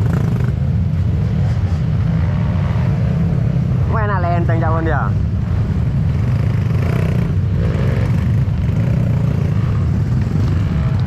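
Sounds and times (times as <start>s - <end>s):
dirt bike engine running: 3.8s - 11.0s.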